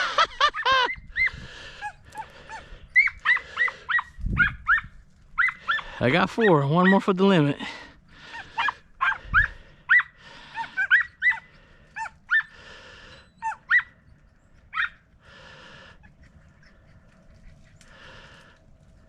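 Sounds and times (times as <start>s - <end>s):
dogs whining and yipping: 0.0s - 7.0s, 8.3s - 15.1s
dog panting: 15.2s - 19.0s.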